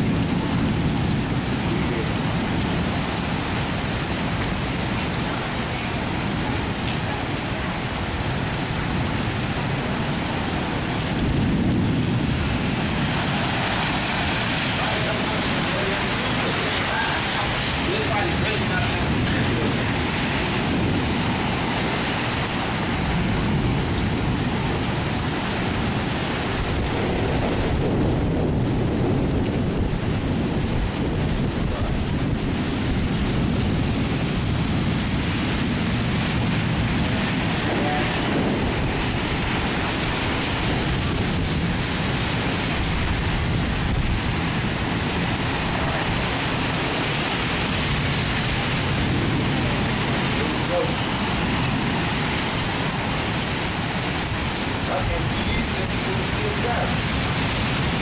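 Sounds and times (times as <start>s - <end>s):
heavy rain: 0.0s - 58.0s
wind: 0.0s - 58.0s.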